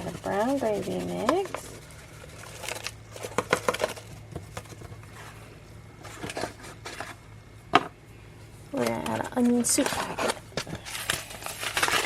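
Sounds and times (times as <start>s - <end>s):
packet crinkling: 2.1s - 4.9s, 9.3s - 12.0s.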